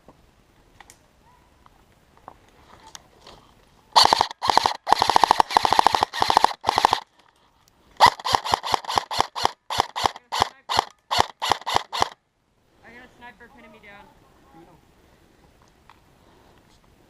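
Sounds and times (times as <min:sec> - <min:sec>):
airsoft gun automatic fire: 0:04.0 - 0:07.1, 0:08.0 - 0:12.2.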